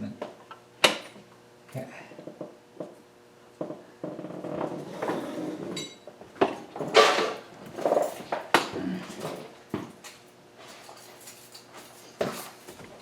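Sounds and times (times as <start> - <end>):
metal tools scraping and rustling: 6.8 - 8.3, 10.6 - 12.8.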